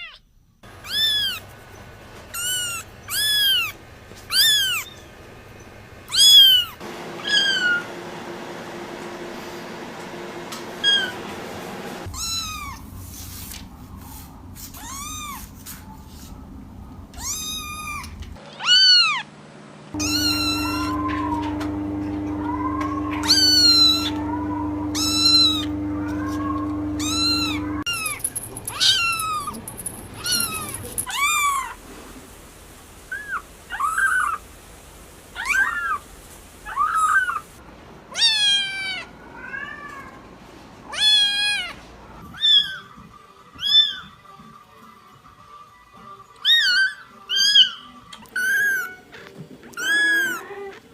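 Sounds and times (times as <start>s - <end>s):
kittens meowing: 0.8s - 1.4s, 17.1s - 19.2s, 20.0s - 21.4s, 22.4s - 28.1s, 49.7s - 50.8s.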